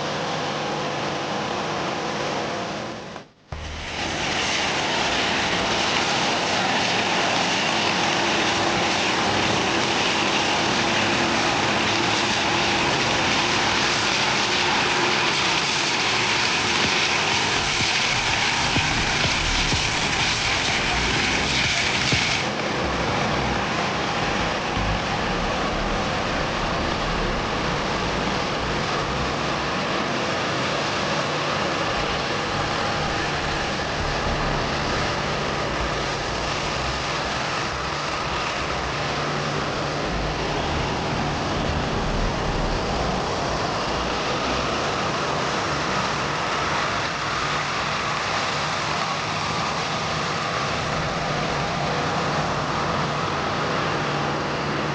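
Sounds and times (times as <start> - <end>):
jet engines running: 0.0 - 54.9
high hiss: 13.4 - 29.9.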